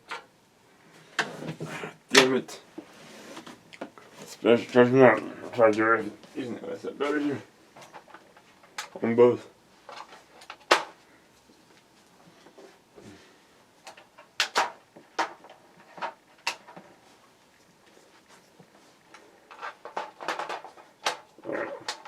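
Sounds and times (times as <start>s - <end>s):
clicks and knocks of parts handled: 7.8s - 9.0s, 13.8s - 16.9s, 19.1s - 22.0s.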